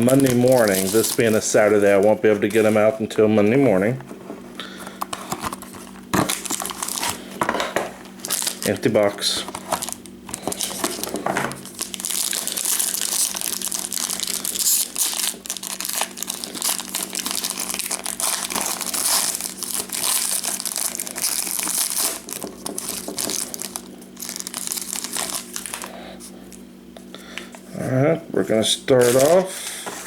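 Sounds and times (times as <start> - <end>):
wrapping crinkling and tearing: 0.0 - 2.8, 5.1 - 7.4, 8.2 - 25.9, 29.0 - 29.4.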